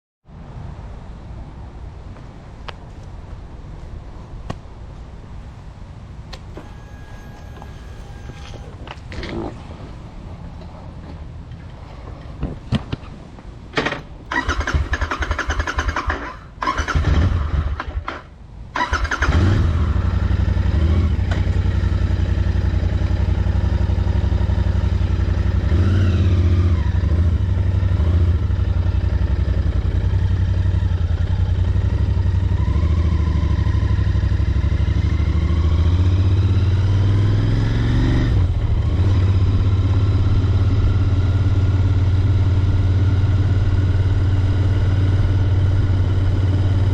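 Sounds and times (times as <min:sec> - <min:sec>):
motorcycle engine starting and idling: 0:13.7 - 0:46.9.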